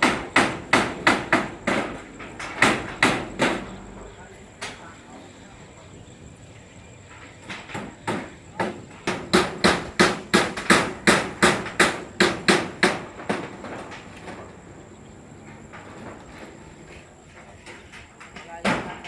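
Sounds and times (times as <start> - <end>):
hammer striking: 0.0 - 4.8, 7.7 - 13.6.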